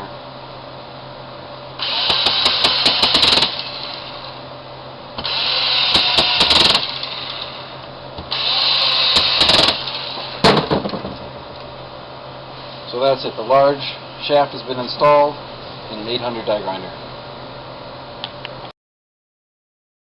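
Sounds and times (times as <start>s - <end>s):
power driver whirring: 1.8s - 4.4s, 5.2s - 10.4s.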